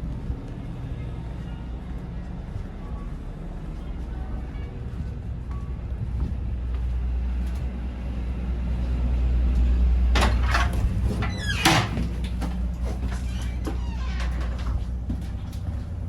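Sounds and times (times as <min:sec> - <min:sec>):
low rumble of standing train: 0:00.0 - 0:16.0
train door clattering and squeaking: 0:10.1 - 0:15.5.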